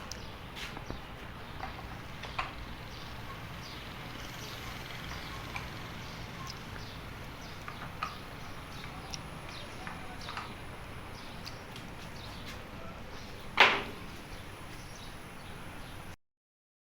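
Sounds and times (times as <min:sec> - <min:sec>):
bird chirps: 0:00.0 - 0:16.2
faint low hum: 0:00.0 - 0:16.2.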